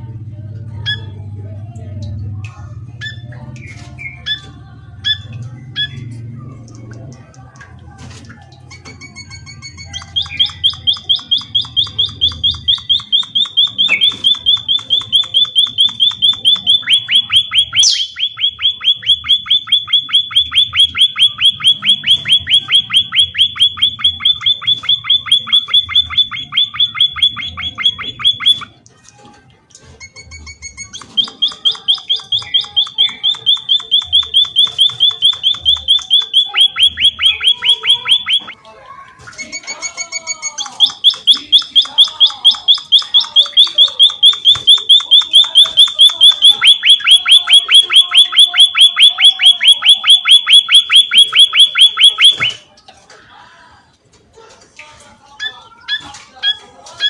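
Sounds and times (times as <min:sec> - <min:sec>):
bird trilling: 0:08.7 - 0:28.8, 0:30.9 - 0:38.6, 0:39.3 - 0:52.6.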